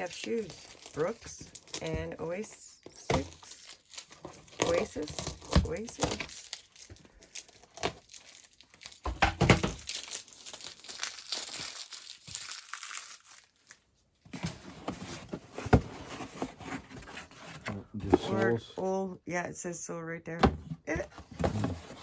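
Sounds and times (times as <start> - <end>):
packaging crinkling and rustling: 0.0 - 17.5.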